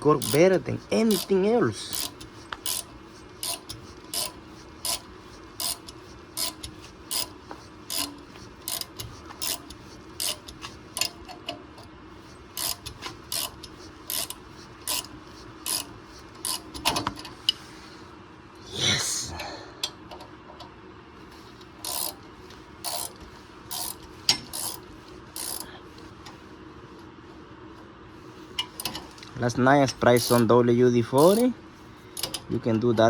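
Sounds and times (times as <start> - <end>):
ratchet wrench clicking: 0.0 - 11.3, 12.5 - 17.6, 21.8 - 22.2, 22.8 - 24.8, 25.4 - 25.7, 28.6 - 29.3, 29.9 - 31.5, 32.2 - 32.5.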